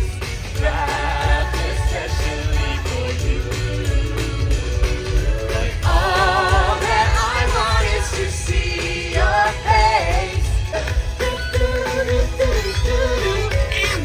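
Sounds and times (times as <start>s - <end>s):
steady bass line: 0.0s - 14.0s
person singing: 5.5s - 14.0s.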